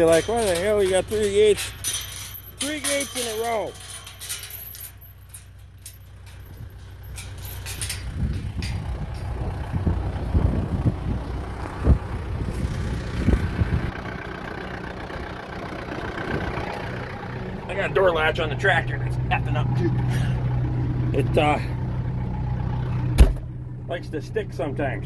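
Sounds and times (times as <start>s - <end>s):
knocks and rattles: 0.0s - 10.3s
vehicle engine running: 0.0s - 25.0s.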